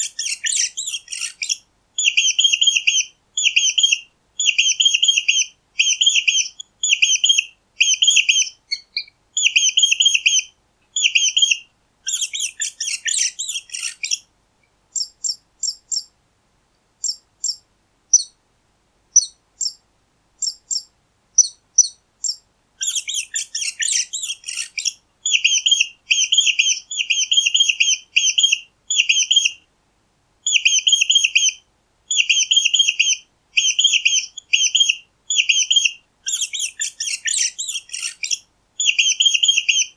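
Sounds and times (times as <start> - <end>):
mice squeaking: 0.0 - 3.8, 4.5 - 10.4, 12.1 - 14.2, 20.4 - 29.5, 30.5 - 39.9.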